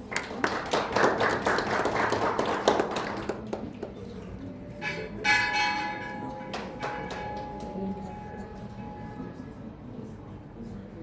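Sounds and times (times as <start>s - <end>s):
audience clapping: 0.0s - 4.0s
sustained ringing tone: 4.8s - 10.8s.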